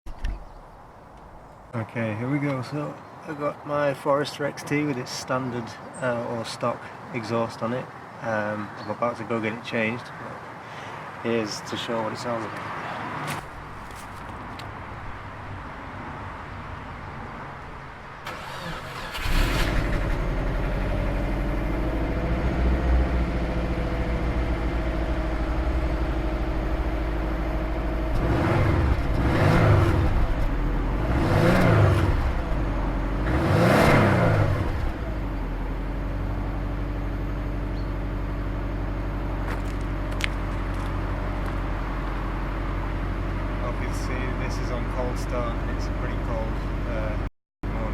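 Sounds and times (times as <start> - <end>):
car engine starting and idling: 18.2 - 47.9
car engine revving: 18.3 - 35.3.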